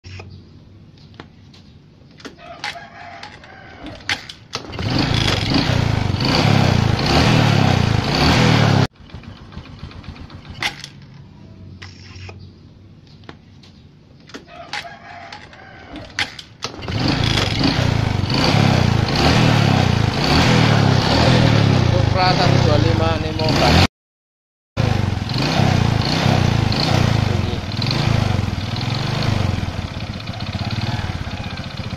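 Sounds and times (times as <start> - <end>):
rooster crowing: 2.3 - 4.1, 14.4 - 16.2, 30.2 - 31.9
motorcycle engine running hard: 4.7 - 10.7, 16.7 - 23.9, 24.8 - 31.9.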